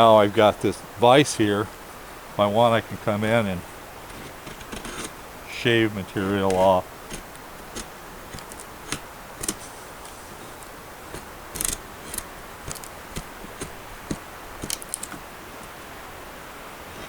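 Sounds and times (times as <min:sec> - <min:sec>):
knife shaving wood: 0:03.7 - 0:15.8.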